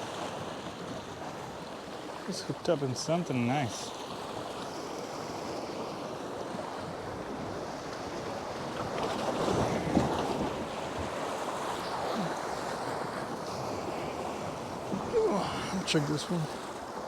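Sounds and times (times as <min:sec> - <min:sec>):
surf washing ashore: 0:00.0 - 0:17.0
wind buffeting microphone: 0:09.3 - 0:11.4.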